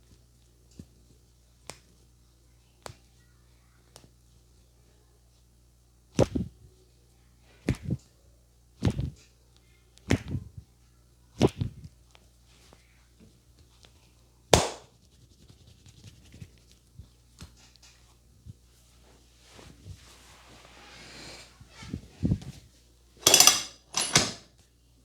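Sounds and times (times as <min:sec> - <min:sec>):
hands slapping head and neck: 0:01.6 - 0:02.0, 0:02.8 - 0:03.0, 0:06.2 - 0:06.5, 0:07.6 - 0:08.0, 0:08.8 - 0:09.2, 0:10.0 - 0:10.5, 0:11.4 - 0:11.9, 0:14.6 - 0:15.1.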